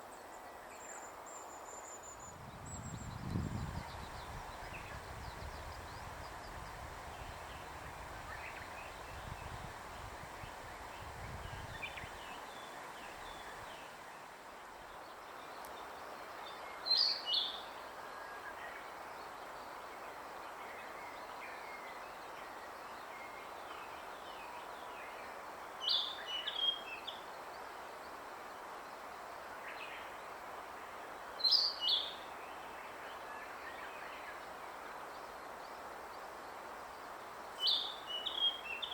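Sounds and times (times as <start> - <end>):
background hiss: 0.0 - 38.9
faint bird chirps: 14.8 - 38.9.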